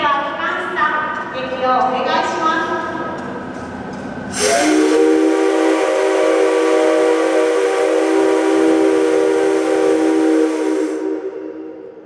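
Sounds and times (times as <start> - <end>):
steam locomotive chime whistle: 4.3 - 11.9.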